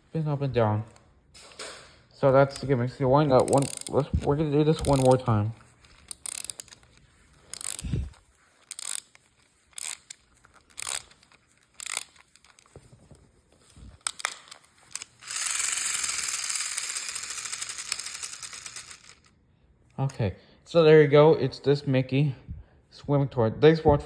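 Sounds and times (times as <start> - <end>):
wind-up toy ratchet clicks: 3.4 - 12.7, 14.0 - 19.3
clockwork motor buzzing whir: 7.5 - 8.1, 14.9 - 19.3.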